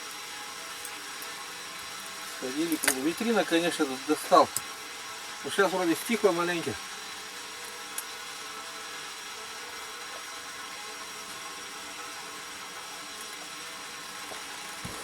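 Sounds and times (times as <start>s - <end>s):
faint whirring hum: 0.0s - 15.0s.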